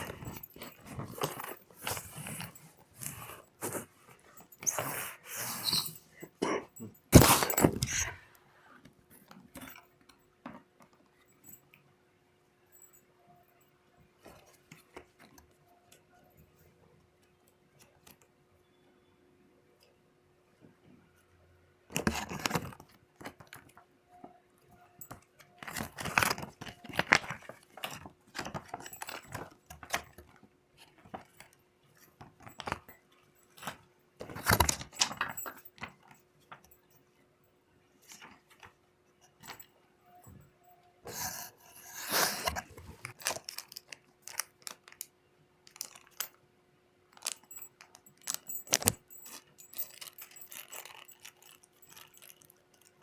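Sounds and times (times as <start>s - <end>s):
wrapping rustling and crinkling: 0.0s - 6.2s, 25.6s - 36.0s, 41.1s - 46.4s, 47.1s - 53.0s.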